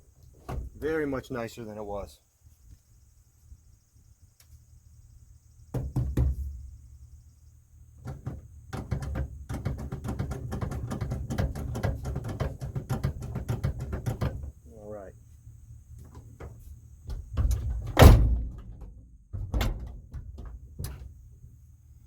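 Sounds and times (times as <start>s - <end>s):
heavy knocks on truck door: 5.7s - 6.6s, 17.2s - 19.9s
clicks and rattling knocks: 8.0s - 14.6s, 16.0s - 21.1s.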